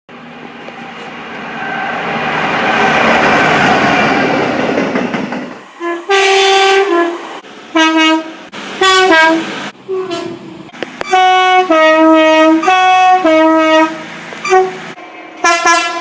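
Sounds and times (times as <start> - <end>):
train running past: 0.1 - 16.0
two-tone train horn: 5.8 - 7.2, 7.8 - 10.4, 11.0 - 14.8, 15.4 - 16.0.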